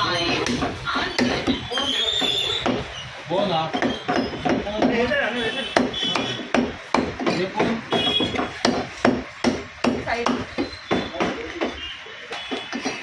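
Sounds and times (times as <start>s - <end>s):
heavy knife chopping meat on block: 3.7s - 5.1s, 5.7s - 11.8s.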